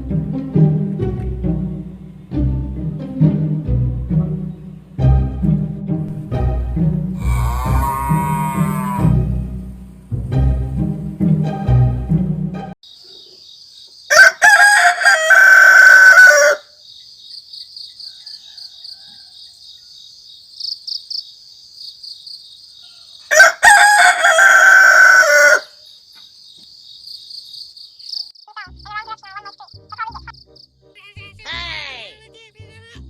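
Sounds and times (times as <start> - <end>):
rooster crowing: 7.2 - 9.2, 14.1 - 16.8, 18.0 - 20.0, 22.8 - 25.8
insects chirping: 12.8 - 31.3.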